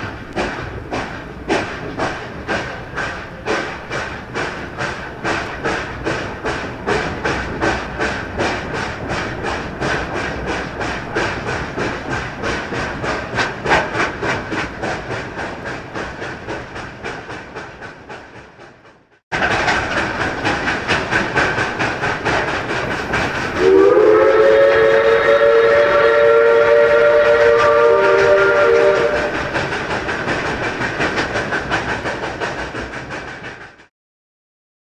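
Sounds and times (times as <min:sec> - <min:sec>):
steam locomotive chuffing: 0:00.0 - 0:33.9
steam whistle: 0:23.6 - 0:29.5.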